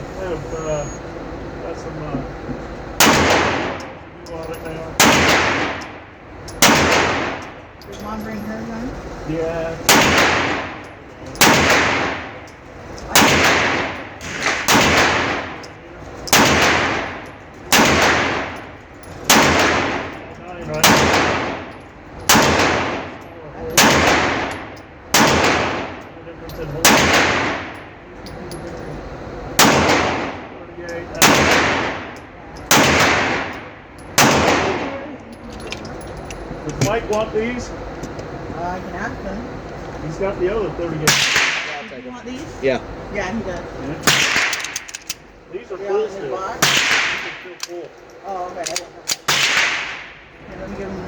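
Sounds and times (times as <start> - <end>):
pistol shots with echo: 3.0 - 4.0, 5.0 - 6.0, 6.6 - 7.6, 9.9 - 10.8, 11.4 - 12.4, 13.1 - 15.6, 16.2 - 18.7, 19.3 - 21.7, 22.3 - 26.0, 26.8 - 27.8, 29.6 - 30.6, 31.2 - 35.0, 41.0 - 41.9, 44.0 - 44.9, 46.6 - 47.6, 48.7 - 50.2.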